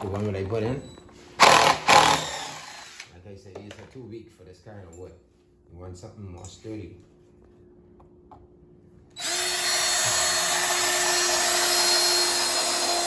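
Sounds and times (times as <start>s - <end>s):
power drill boring into wood: 1.4s - 3.1s, 9.2s - 13.0s.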